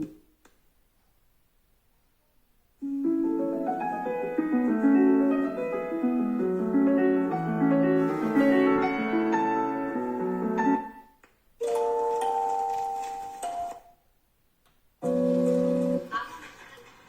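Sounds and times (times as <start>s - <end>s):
piano music through speakers: 2.8s - 14.0s.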